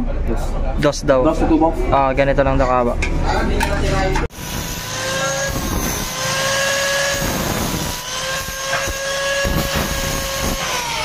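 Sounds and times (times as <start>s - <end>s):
power tool motor whining: 4.3s - 11.0s.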